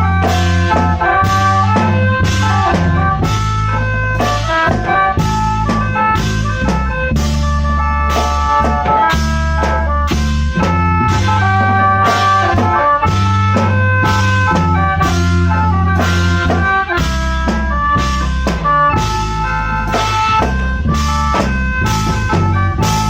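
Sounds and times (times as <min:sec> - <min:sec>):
drum kit beat: 0:00.0 - 0:23.0
mouth organs playing melody: 0:00.0 - 0:23.0.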